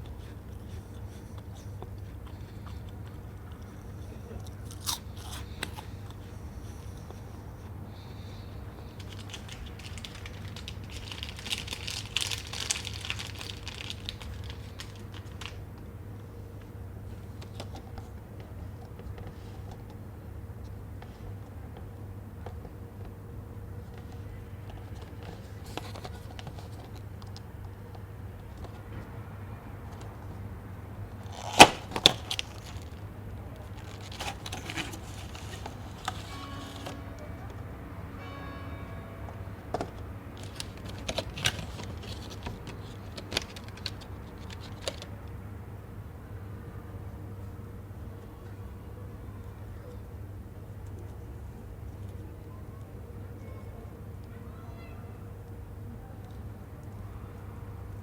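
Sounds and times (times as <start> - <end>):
faint clicks and crackles: 0.0 - 29.1, 31.2 - 45.4
rapid small clicks and crackles: 8.0 - 20.0, 40.4 - 45.4
sharp crack: 31.3 - 33.0.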